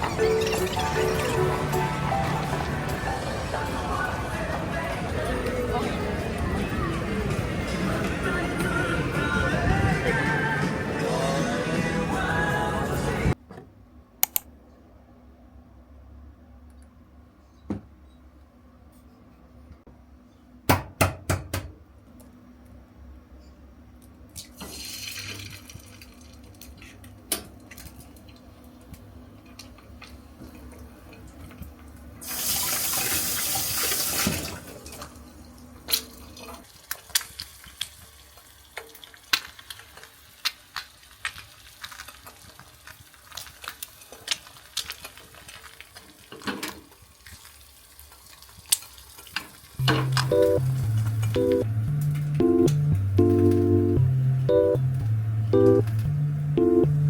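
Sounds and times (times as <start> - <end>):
dishes and utensils clinking: 0.0 - 3.3
low steady hum: 49.8 - 57.0.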